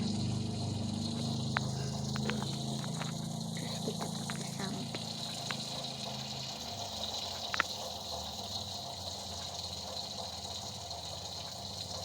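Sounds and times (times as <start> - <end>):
water filling a bath: 0.0 - 12.0.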